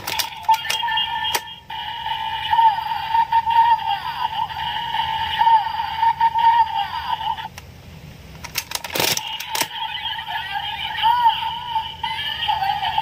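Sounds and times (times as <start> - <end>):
toy warbling electronic tone: 0.1 - 7.5, 9.2 - 13.0.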